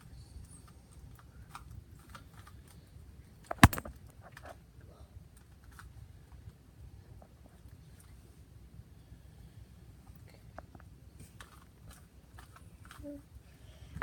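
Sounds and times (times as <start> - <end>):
sharp knock: 3.5 - 3.9.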